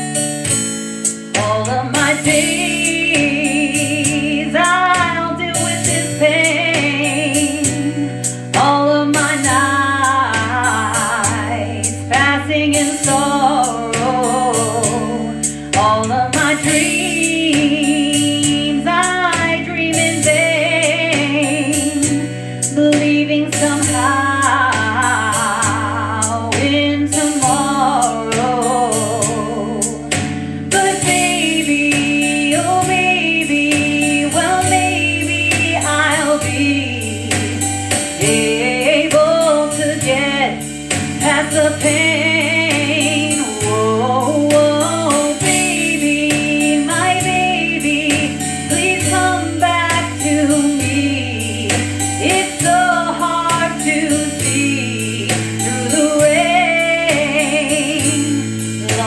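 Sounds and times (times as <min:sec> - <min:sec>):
instrumental accompaniment: 0:00.0 - 0:59.0
woman singing slow song: 0:01.2 - 0:59.0.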